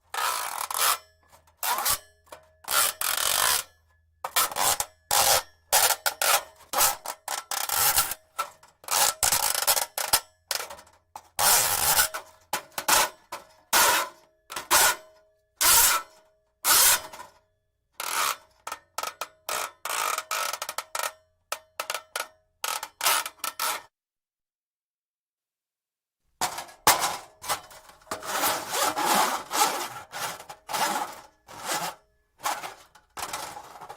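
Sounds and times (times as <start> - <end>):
steel cable scraping: 26.8 - 33.9.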